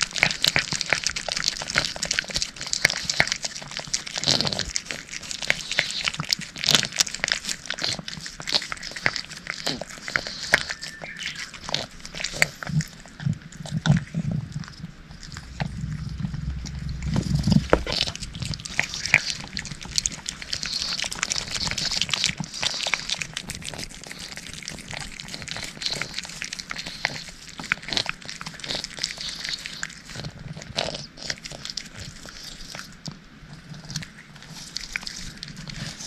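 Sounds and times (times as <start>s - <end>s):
cat licking and smacking: 0.0s - 36.0s
low rumble: 12.6s - 22.4s.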